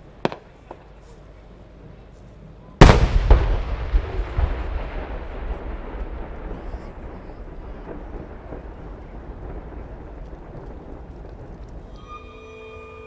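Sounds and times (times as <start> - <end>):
faint firework pops: 0.0 - 1.3, 2.8 - 12.0
firework shell burst rumbling: 2.8 - 12.5.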